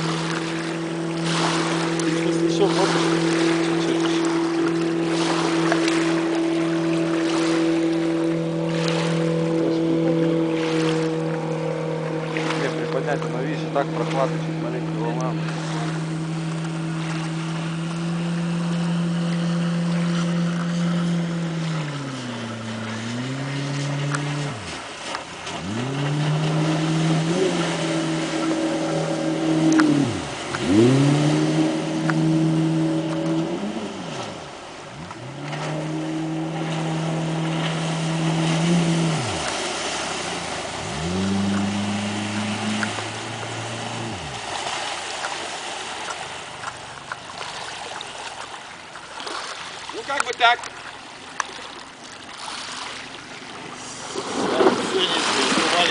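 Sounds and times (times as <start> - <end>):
outboard motor running: 0.0 - 55.9
water noise: 0.0 - 55.9.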